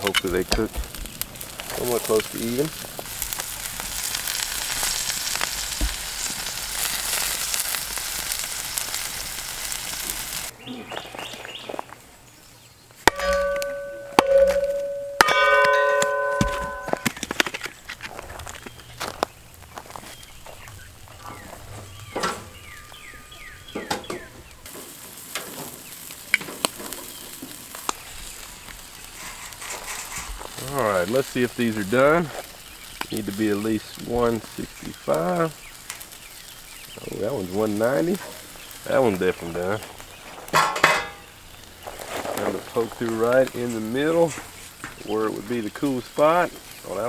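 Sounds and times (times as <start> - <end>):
sharp pops and crackles: 0.0 - 10.5, 12.9 - 47.0
meat sizzling on a grill: 0.0 - 11.9, 18.1 - 47.0
bird chirping: 10.5 - 17.4, 18.3 - 24.7.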